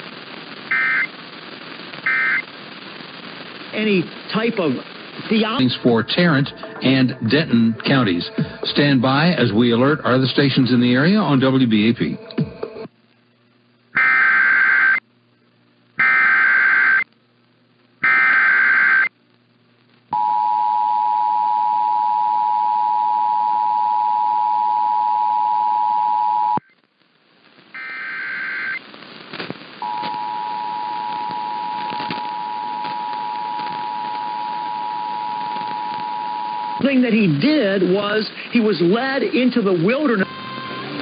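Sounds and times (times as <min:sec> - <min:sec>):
screeching data bursts: 0:00.7 - 0:01.2, 0:02.0 - 0:02.5, 0:14.0 - 0:15.0, 0:16.0 - 0:17.1, 0:18.0 - 0:19.1, 0:27.7 - 0:28.9, 0:29.8 - 0:37.0.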